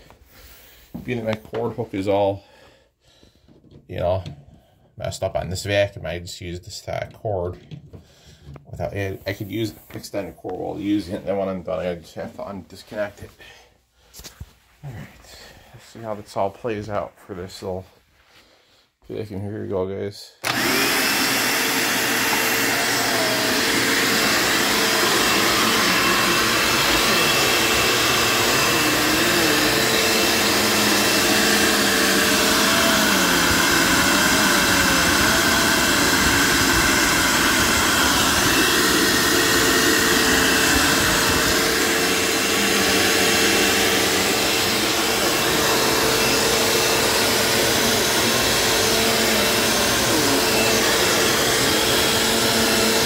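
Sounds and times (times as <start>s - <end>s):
vacuum cleaner motor whine: 20.4s - 53.0s.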